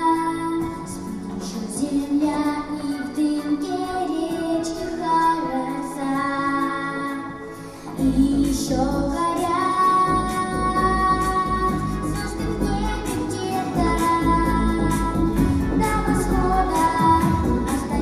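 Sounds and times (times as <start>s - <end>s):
woman singing: 0.0s - 18.0s
deep bass: 8.0s - 9.3s, 10.1s - 18.0s.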